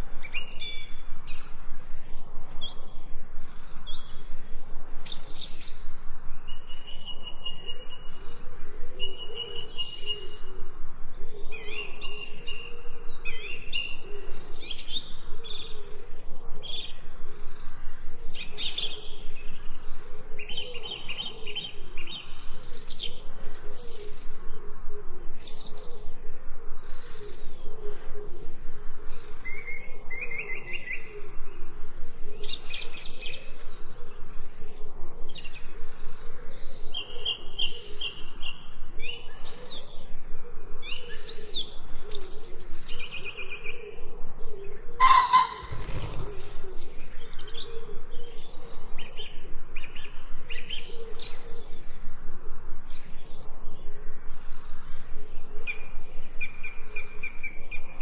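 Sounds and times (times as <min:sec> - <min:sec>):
birds chirping and trilling: 0:00.0 - 0:58.0
low wavering bird call: 0:45.0 - 0:46.1.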